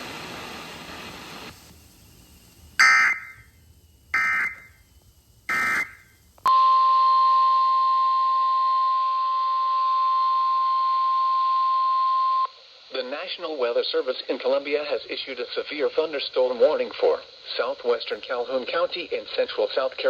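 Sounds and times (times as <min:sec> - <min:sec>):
digital data bursts: 0:02.8 - 0:03.5, 0:04.1 - 0:04.7, 0:05.5 - 0:06.1.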